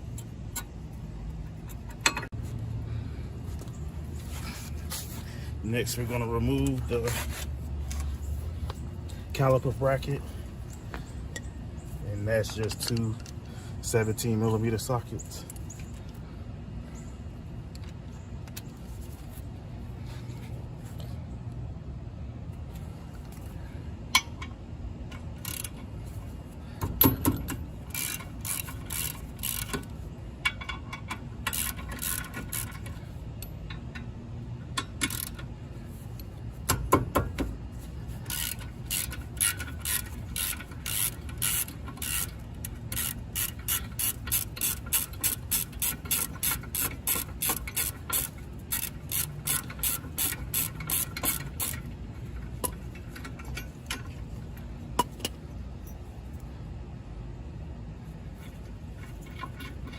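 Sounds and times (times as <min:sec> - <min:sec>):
hand ratchet clicking: 0:25.2 - 0:25.9, 0:26.8 - 0:34.1, 0:34.7 - 0:35.5, 0:38.2 - 0:54.1.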